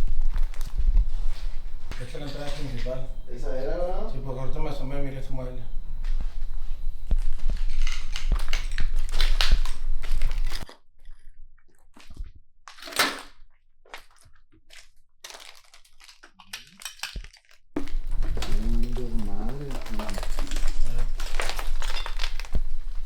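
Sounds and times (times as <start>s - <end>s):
low rumble: 0.0s - 10.6s
footsteps crunching over debris: 0.0s - 10.8s, 17.8s - 23.0s.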